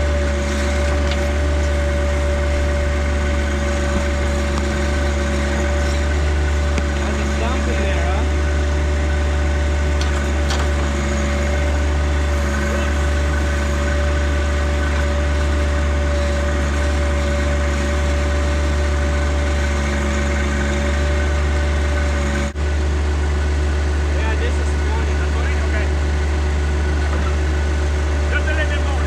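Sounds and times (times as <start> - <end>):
tractor engine running: 0.0 - 29.0.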